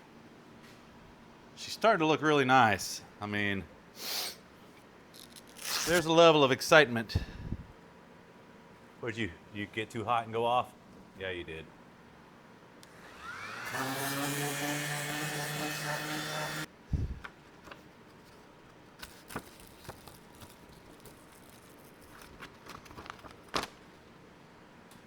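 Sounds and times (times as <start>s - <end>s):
power tool motor whining: 12.9s - 16.7s.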